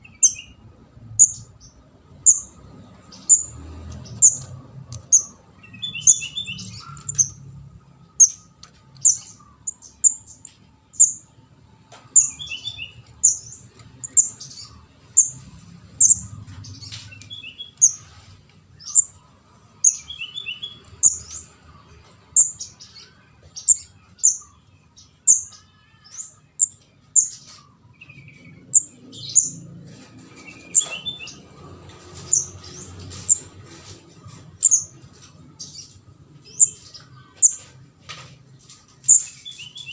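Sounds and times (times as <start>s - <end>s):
high-pitched bird chick calls: 4.1s - 7.4s.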